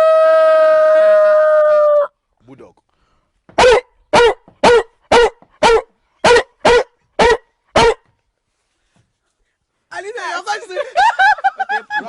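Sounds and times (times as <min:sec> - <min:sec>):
boy imitating dog barks: 0:03.6 - 0:08.0.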